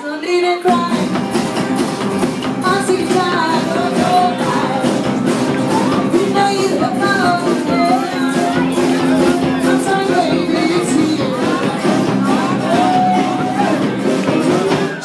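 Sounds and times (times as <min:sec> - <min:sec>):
drums: 0:00.0 - 0:15.0
bass line: 0:00.7 - 0:15.0
person singing: 0:02.4 - 0:15.0.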